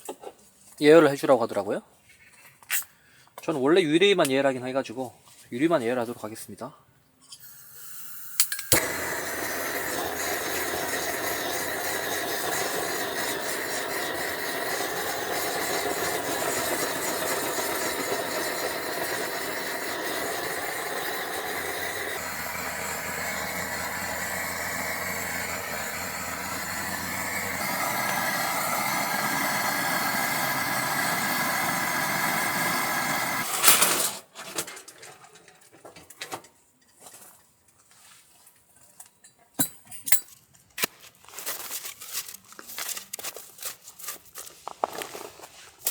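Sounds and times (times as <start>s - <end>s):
gas torch hissing: 7.4s - 34.0s
torch shut-off click: 7.8s - 34.1s.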